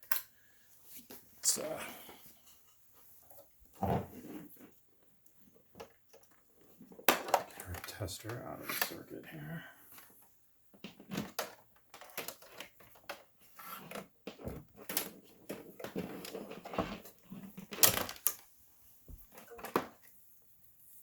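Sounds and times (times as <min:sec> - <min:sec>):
plugs and power cords rattling: 0:05.7 - 0:09.0, 0:10.8 - 0:18.4.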